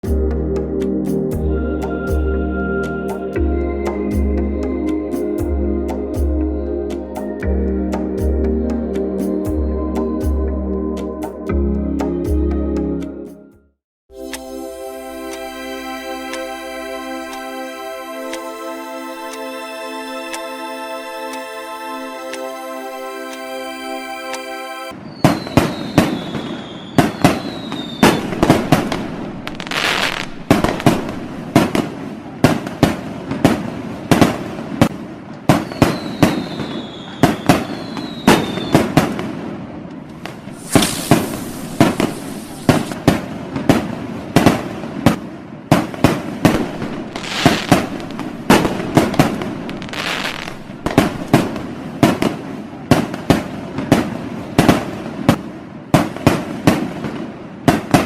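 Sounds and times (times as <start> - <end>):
falling firework whistles: 24.9 - 31.7, 35.5 - 39.2, 40.4 - 43.0, 46.5 - 51.6
fireworks bangs and crackles: 25.0 - 58.0
hissing rush: 40.5 - 43.0.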